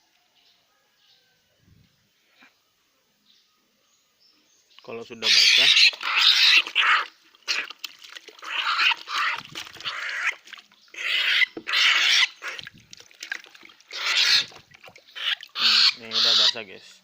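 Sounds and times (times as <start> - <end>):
bird giving harsh rasping screeches: 5.2 - 7.7, 13.9 - 16.6.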